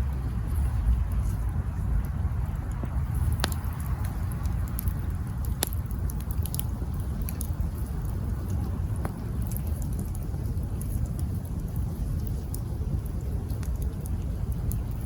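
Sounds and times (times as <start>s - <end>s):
campfire crackling and popping: 0.0s - 15.0s.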